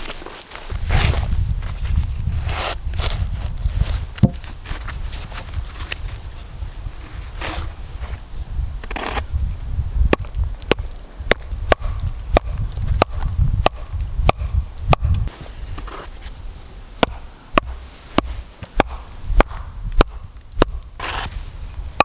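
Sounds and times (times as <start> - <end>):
axe striking wood: 4.2 - 4.4, 10.1 - 15.2, 17.0 - 21.3.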